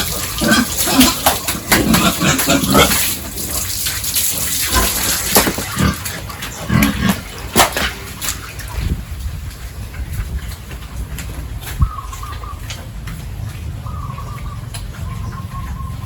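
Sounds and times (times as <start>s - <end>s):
pigs grunting: 0.0s - 8.4s
water splashing: 0.0s - 16.0s.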